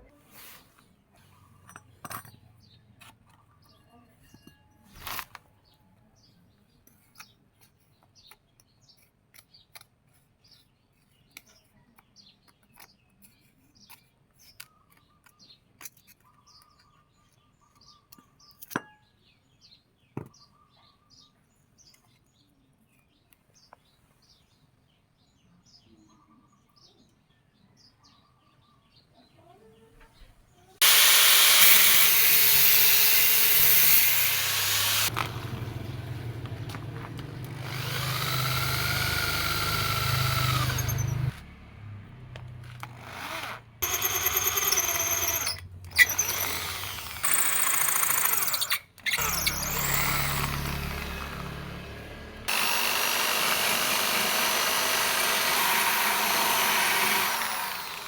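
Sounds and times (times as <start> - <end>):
faint birds chirping: 0.0 - 30.8, 33.1 - 58.0
power tool grinding: 4.9 - 5.4, 30.8 - 58.0
sharp clicks: 30.8 - 41.4.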